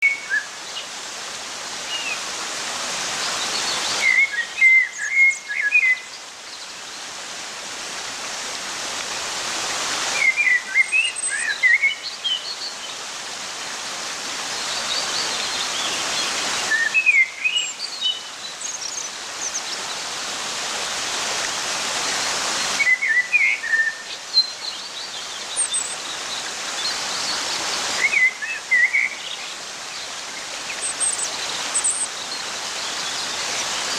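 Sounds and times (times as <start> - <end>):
birds chirping: 21.8 - 33.9.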